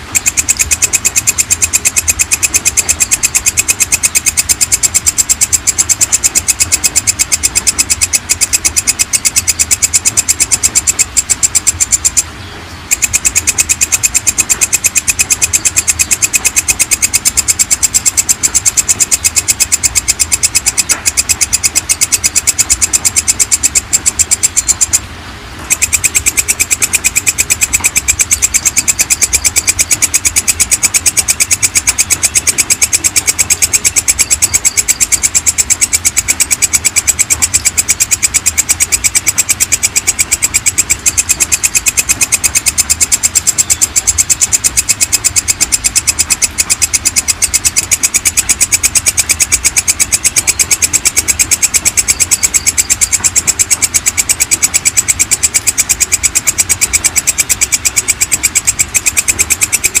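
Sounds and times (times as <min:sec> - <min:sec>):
katydid clicking call: 0:00.0 - 1:00.0.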